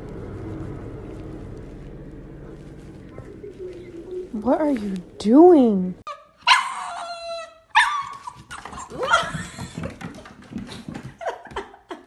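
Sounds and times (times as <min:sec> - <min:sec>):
dog whining: 0:06.1 - 0:09.9.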